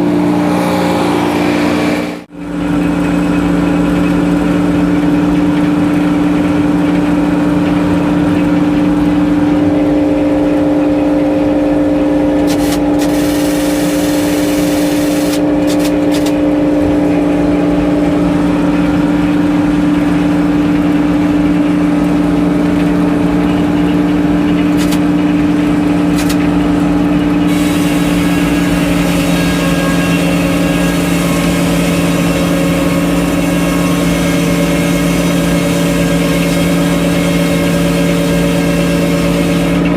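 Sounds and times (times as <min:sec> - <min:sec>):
sawmill engine droning: 0:00.0 - 0:39.9
loud hiss: 0:12.5 - 0:16.3, 0:27.5 - 0:35.8
sharp clicks: 0:24.6 - 0:25.1, 0:26.1 - 0:26.6.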